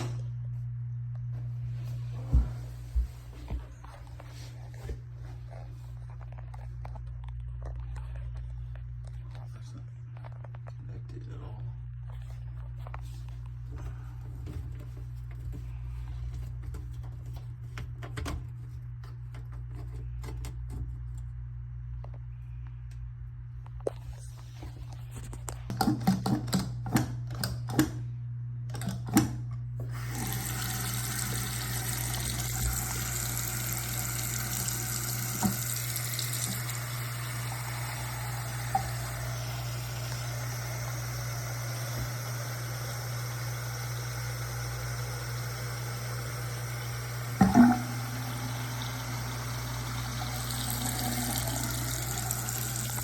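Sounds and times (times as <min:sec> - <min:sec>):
tap running into sink: 0:30.1 - 0:36.9, 0:47.4 - 0:48.8, 0:50.0 - 0:53.0.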